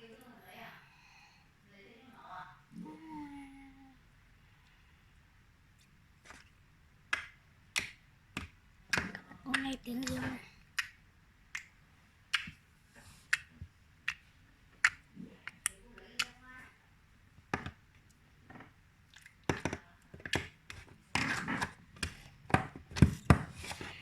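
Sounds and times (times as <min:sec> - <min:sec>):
slime squishing: 0:06.2 - 0:16.7, 0:19.0 - 0:24.0.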